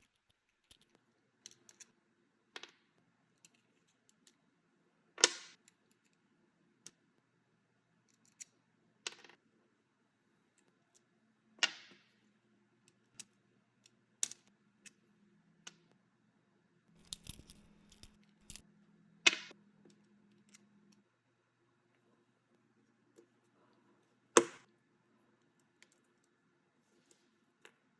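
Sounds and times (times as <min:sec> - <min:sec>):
metal hardware clinking: 0:17.0 - 0:18.6.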